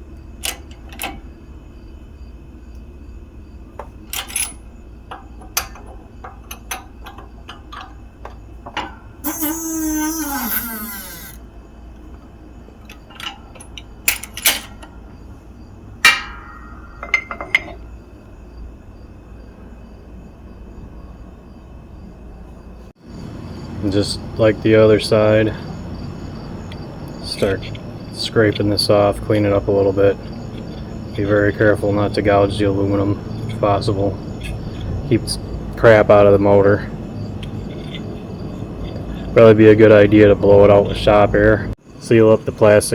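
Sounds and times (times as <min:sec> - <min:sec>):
metal clinks and knocks: 0:03.7 - 0:09.1, 0:12.8 - 0:15.2, 0:16.0 - 0:18.0, 0:37.2 - 0:39.1.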